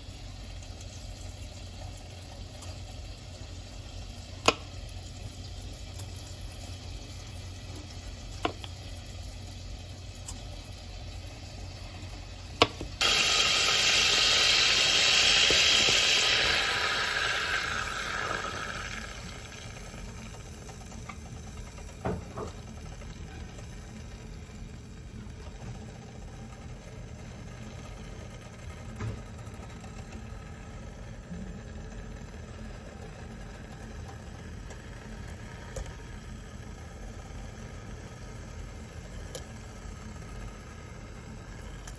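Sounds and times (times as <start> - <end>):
chicken sizzling in hot oil: 0.0 - 23.0
low steady hum: 0.0 - 28.7.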